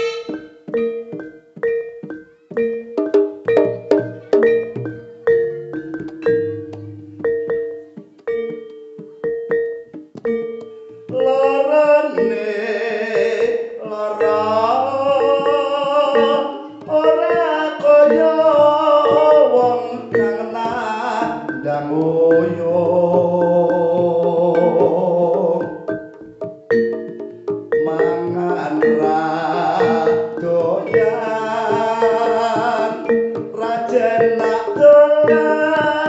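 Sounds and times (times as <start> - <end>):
pitched metal percussion notes: 0.0 - 36.0
person singing wavering vocal: 4.2 - 8.0, 10.9 - 26.2, 27.8 - 36.0.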